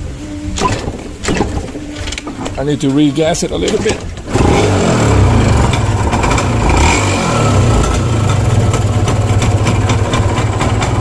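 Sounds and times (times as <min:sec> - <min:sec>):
two-stroke engine running: 0:04.3 - 0:11.0.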